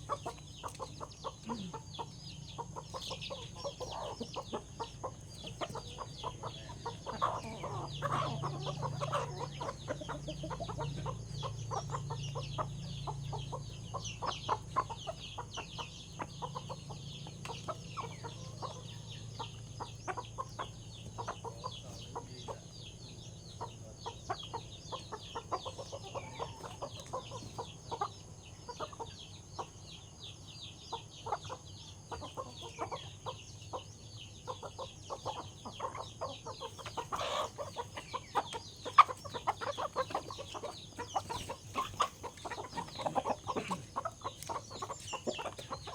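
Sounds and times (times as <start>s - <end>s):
chickens clucking: 0.0s - 45.9s.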